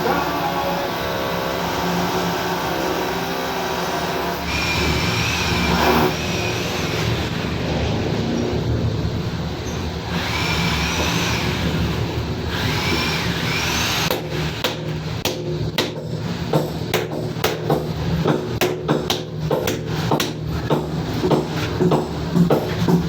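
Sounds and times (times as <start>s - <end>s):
whirring with gliding whines: 0.0s - 14.1s
steady low hum: 4.4s - 23.0s
sharp hammer-like knocks: 14.1s - 23.0s.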